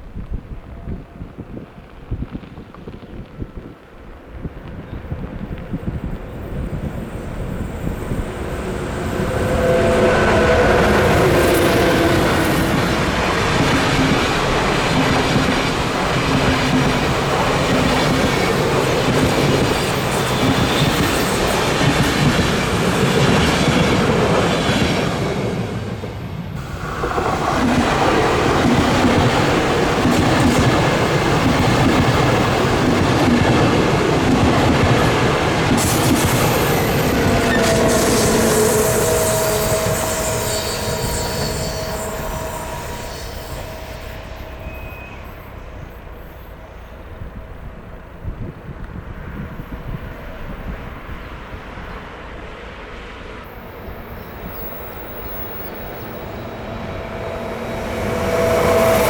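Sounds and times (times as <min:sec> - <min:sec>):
train wheels clattering: 0:05.2 - 0:46.4
wheel squeal: 0:05.8 - 0:13.1, 0:35.9 - 0:46.9, 0:53.5 - 0:59.0.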